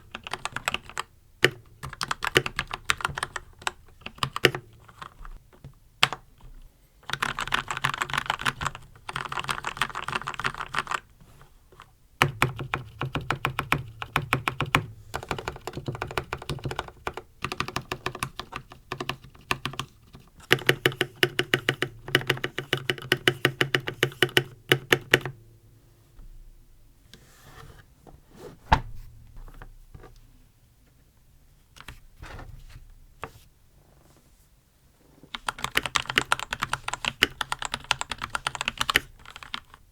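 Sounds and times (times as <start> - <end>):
mechanical keyboard typing: 0.1 - 5.2, 7.0 - 11.1, 12.2 - 25.4, 35.3 - 39.8.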